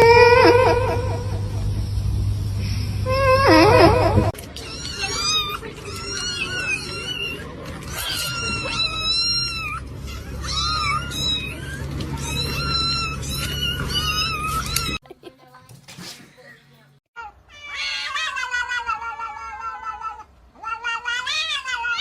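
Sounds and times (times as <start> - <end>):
cat meowing: 3.1 - 15.0, 17.2 - 22.0.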